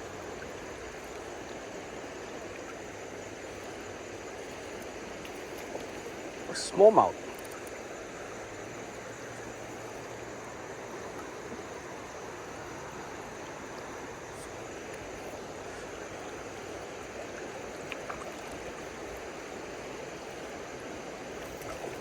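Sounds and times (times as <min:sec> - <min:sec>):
river water rushing: 0:00.0 - 0:07.3
faint ticks: 0:07.3 - 0:07.8.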